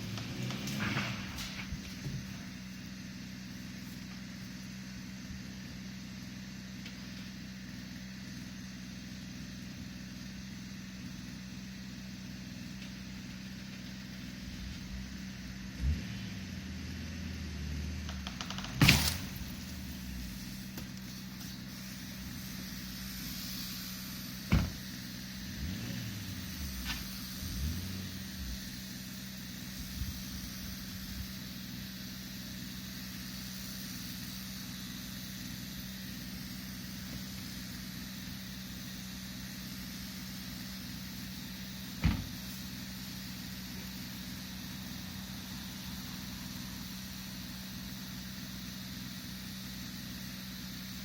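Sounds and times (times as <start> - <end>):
engine idling: 0.0 - 51.0.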